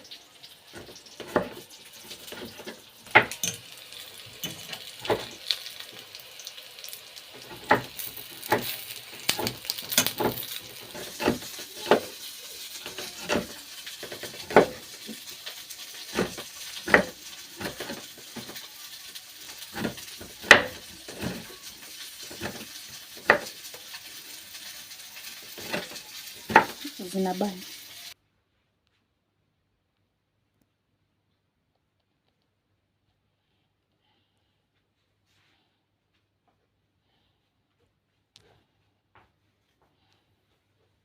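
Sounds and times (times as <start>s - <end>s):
sausages sizzling in a frying pan: 0.0s - 28.2s
utensil scraping a pan: 0.7s - 5.8s, 7.3s - 18.7s, 19.4s - 27.0s.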